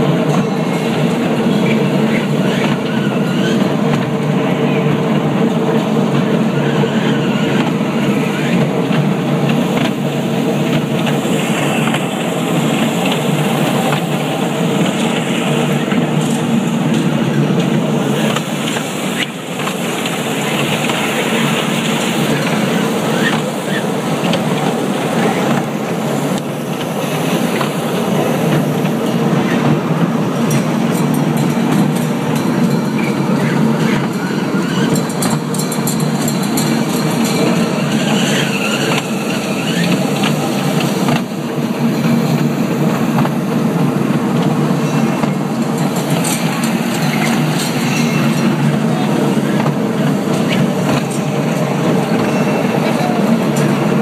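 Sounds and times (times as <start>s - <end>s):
ride-on train running: 0.0s - 54.0s
murmur of voices: 45.0s - 54.0s.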